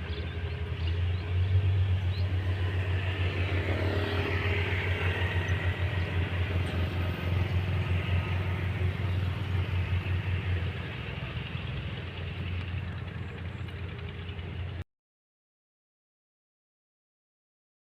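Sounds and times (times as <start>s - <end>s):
diesel engine pulsing hum: 0.0s - 14.8s.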